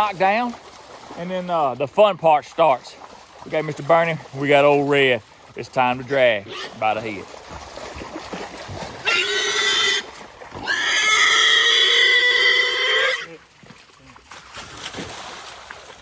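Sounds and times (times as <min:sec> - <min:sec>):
hogs squealing: 0:06.4 - 0:07.2, 0:09.0 - 0:13.3.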